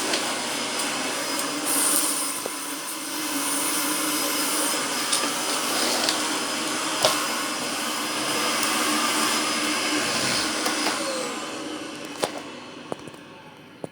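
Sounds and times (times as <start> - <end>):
vacuum cleaner motor whirring: 0.0 - 13.9.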